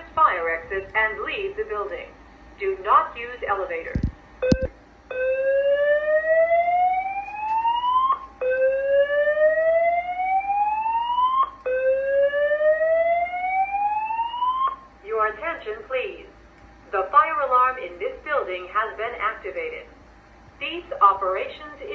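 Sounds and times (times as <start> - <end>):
fire alarm whoop tone: 4.5 - 14.9.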